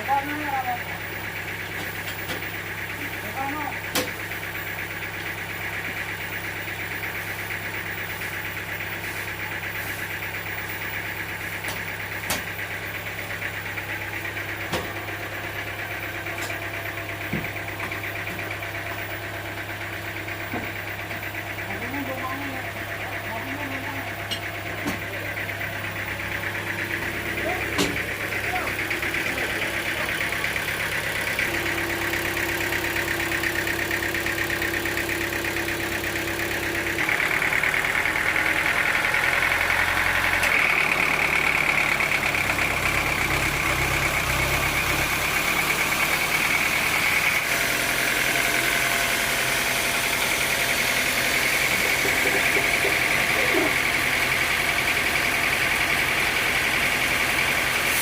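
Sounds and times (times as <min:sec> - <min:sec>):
engine running: 0:00.0 - 0:58.0.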